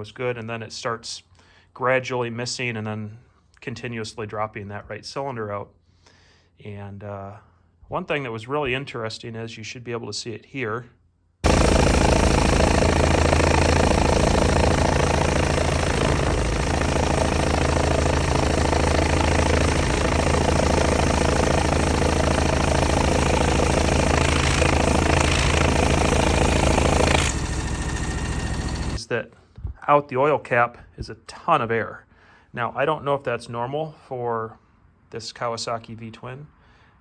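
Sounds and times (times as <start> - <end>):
riding mower engine running: 11.4 - 29.0.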